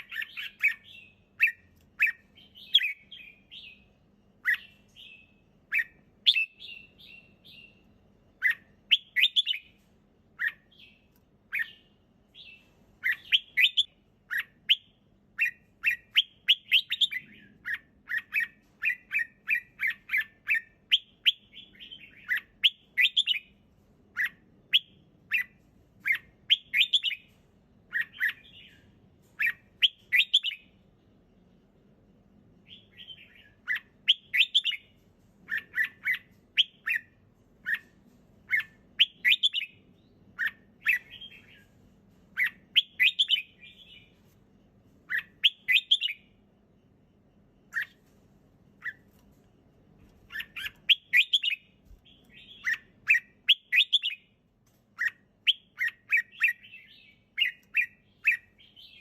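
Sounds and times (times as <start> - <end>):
bird singing chirping notes: 0.0 - 9.8, 10.4 - 23.6, 24.2 - 30.8, 32.6 - 34.9, 38.5 - 41.8, 42.4 - 44.2, 45.1 - 46.4, 50.3 - 54.3, 55.0 - 59.0.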